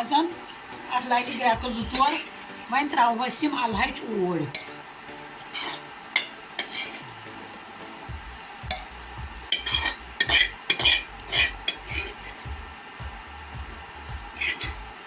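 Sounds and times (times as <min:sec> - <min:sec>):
metal spoon scraping a pot: 0:00.0 - 0:02.7, 0:04.4 - 0:07.7, 0:08.7 - 0:12.5, 0:14.3 - 0:15.0
meat frying: 0:00.0 - 0:15.0.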